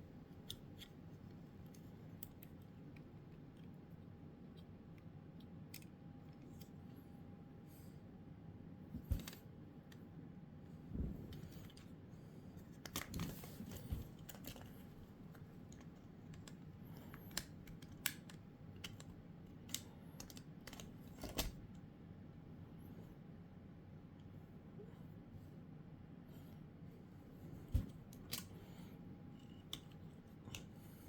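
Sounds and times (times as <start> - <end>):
faint steady hum: 0.0 - 31.0
clicks of handling a game controller: 12.7 - 21.6, 27.8 - 28.6.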